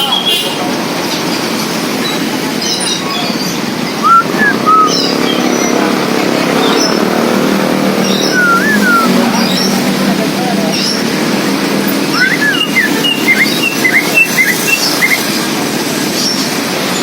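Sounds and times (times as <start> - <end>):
bird chirping and whistling: 2.1 - 5.8, 8.0 - 9.9, 11.9 - 15.4.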